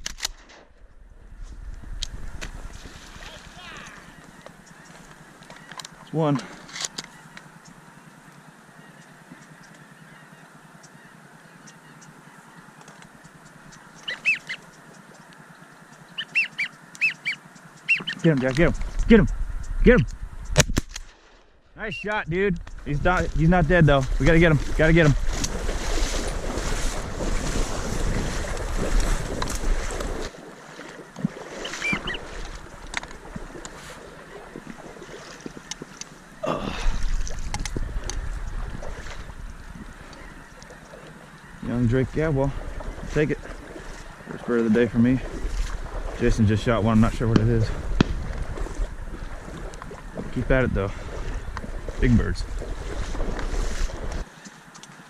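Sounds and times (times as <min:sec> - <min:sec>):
wind buffeting microphone: 0:00.8 - 0:05.3, 0:18.4 - 0:20.9, 0:22.0 - 0:30.3, 0:31.6 - 0:54.2
distant waterfowl calls: 0:02.2 - 0:20.6, 0:21.8 - 0:55.0
goose yelping calls: 0:14.0 - 0:14.7, 0:16.2 - 0:18.3, 0:31.6 - 0:32.4.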